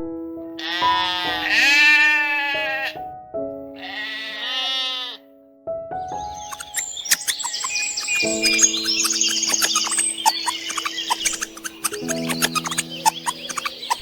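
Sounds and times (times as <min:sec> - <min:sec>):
background music: 0:00.0 - 0:14.0
sheep bleating: 0:00.6 - 0:03.0, 0:03.8 - 0:05.3.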